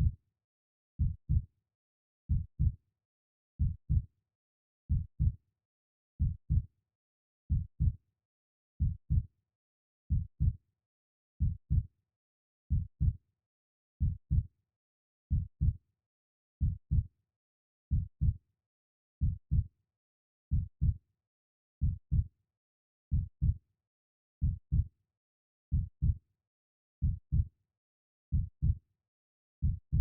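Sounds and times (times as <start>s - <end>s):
slow heartbeat: 2.3s - 2.7s, 4.9s - 5.3s, 7.5s - 8.0s, 12.7s - 13.2s, 15.3s - 15.8s, 17.9s - 18.4s, 19.2s - 19.6s, 21.8s - 22.2s, 24.4s - 24.9s, 25.7s - 26.2s, 27.0s - 27.5s, 28.3s - 28.8s, 29.6s - 30.0s.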